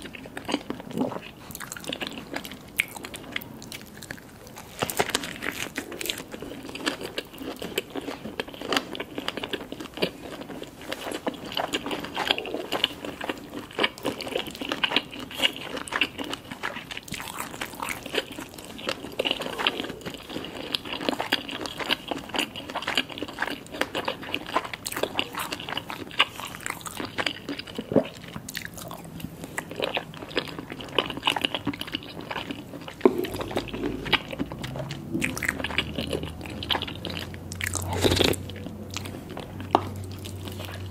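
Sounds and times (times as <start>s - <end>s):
food being chewed: 0.0s - 40.9s.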